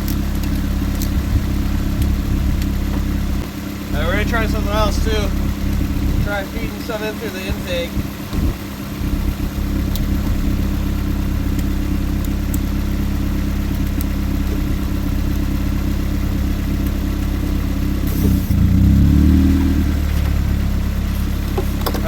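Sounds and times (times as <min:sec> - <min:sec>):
car engine running: 0:00.0 - 0:22.0
short hiss: 0:18.0 - 0:18.5.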